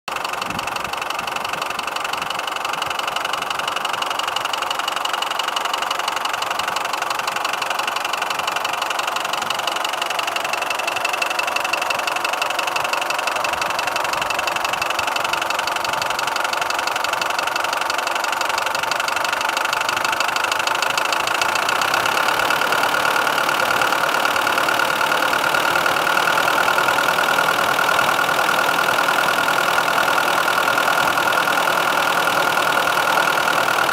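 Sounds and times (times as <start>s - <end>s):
diesel engine running: 0.1s - 33.9s
metallic engine knock: 0.1s - 33.9s
steady engine whine: 19.3s - 33.9s.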